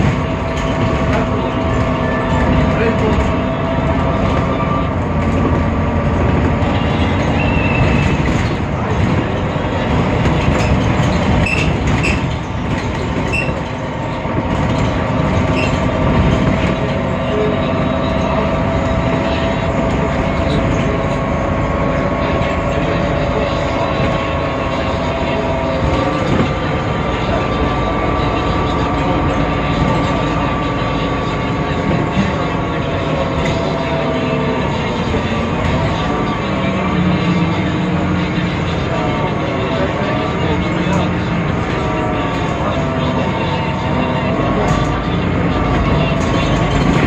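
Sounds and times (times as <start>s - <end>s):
bus engine droning: 0.0s - 47.0s.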